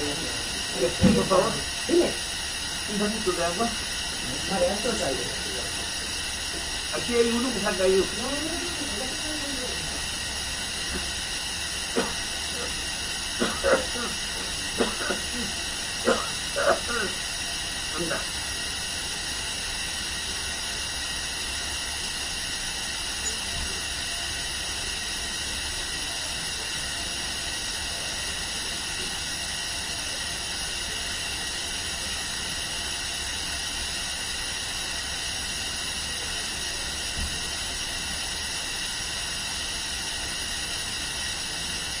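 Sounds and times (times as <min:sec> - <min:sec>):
room tone hiss: 0:00.0 - 0:42.0.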